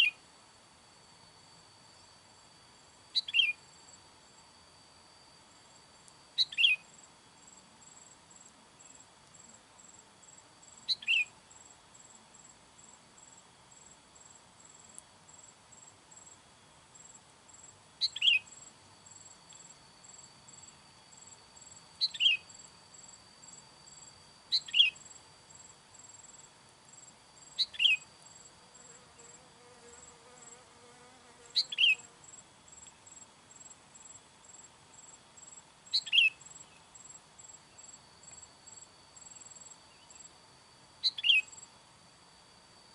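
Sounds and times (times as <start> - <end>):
high-pitched insect trilling: 1.0 - 16.4, 17.0 - 42.9
bird calling: 3.2 - 3.6, 6.4 - 6.8, 10.9 - 11.3, 18.0 - 18.5, 22.0 - 22.4, 24.5 - 25.0, 27.6 - 28.0, 31.6 - 32.0, 41.1 - 41.5.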